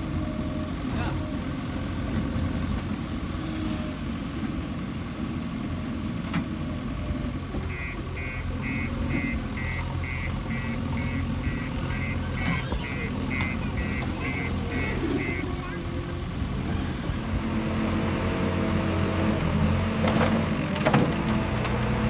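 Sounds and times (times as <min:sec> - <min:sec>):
heavy machinery diesel engine: 0:00.0 - 0:22.0
reversing alarm beeping: 0:06.9 - 0:16.2.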